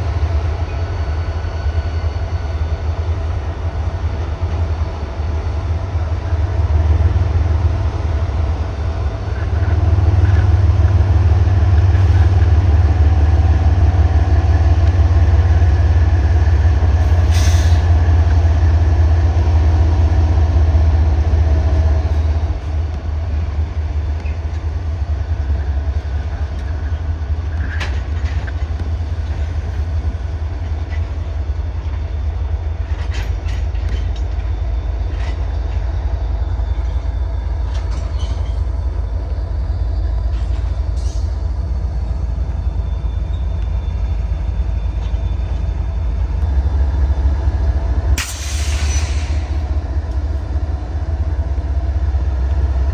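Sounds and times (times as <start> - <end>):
train rumbling: 0.0 - 52.9
short hiss: 48.2 - 49.6.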